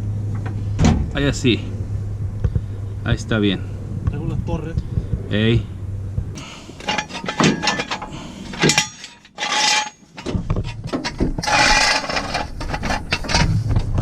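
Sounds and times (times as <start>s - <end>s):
metal scraping against ground: 6.3s - 14.0s
metal jack stands clanking: 6.4s - 13.7s.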